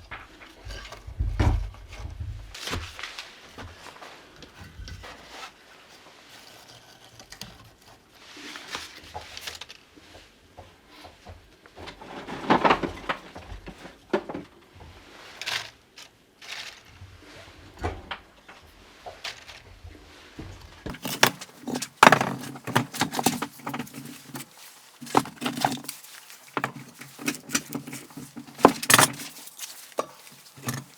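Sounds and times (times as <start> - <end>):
clatter of objects: 0.0 - 5.6, 6.3 - 30.9
objects knocking and clicking: 20.9 - 30.9.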